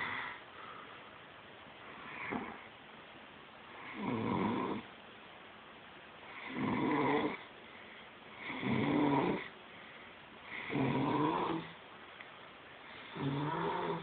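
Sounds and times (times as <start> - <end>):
slow snoring: 2.0 - 2.7, 3.8 - 4.9, 6.3 - 7.5, 8.3 - 9.6, 10.4 - 11.8, 12.9 - 14.0.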